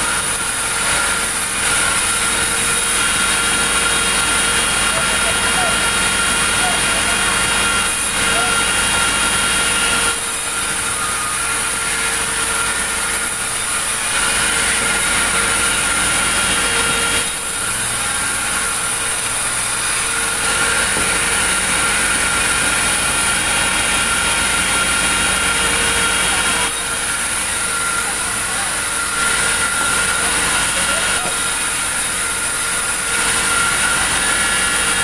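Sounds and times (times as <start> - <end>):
motor running with whine: 0.0 - 35.0.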